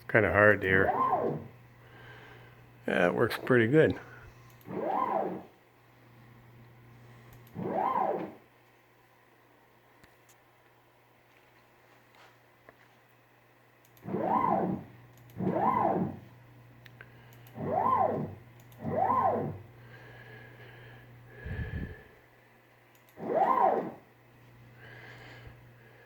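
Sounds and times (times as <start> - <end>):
steady low hum: 0.0 - 26.0
stepper motor whine: 0.6 - 1.6, 4.6 - 5.6, 7.4 - 8.5, 14.0 - 16.3, 17.4 - 20.0, 23.1 - 24.1.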